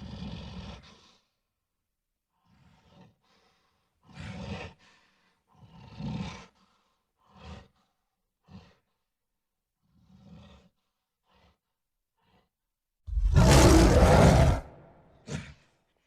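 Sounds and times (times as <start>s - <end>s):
gorilla roaring: 13.1s - 15.6s.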